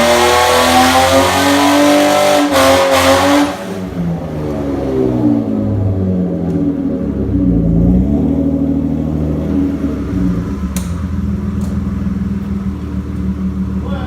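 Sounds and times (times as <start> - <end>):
car engine running: 3.1 - 14.0.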